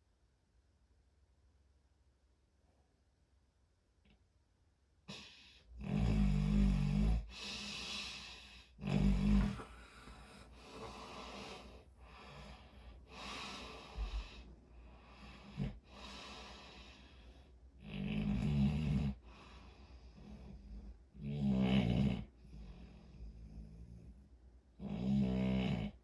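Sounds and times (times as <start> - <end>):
person snoring: 5.8 - 14.4, 17.8 - 19.3, 20.1 - 24.0.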